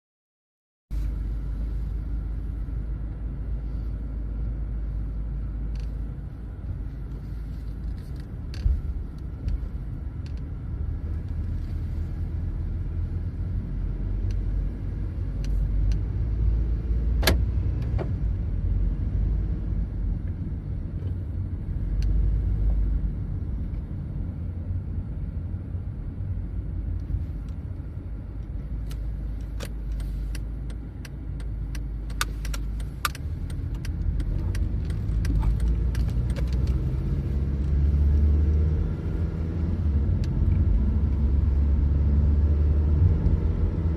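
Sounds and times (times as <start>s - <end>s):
road and engine rumble: 0.9s - 43.9s
creaking ticks and squeaks: 7.8s - 8.8s.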